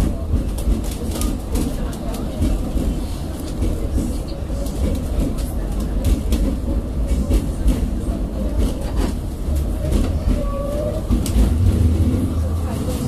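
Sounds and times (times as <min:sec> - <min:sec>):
tram wheels rumbling: 0:00.0 - 0:13.0.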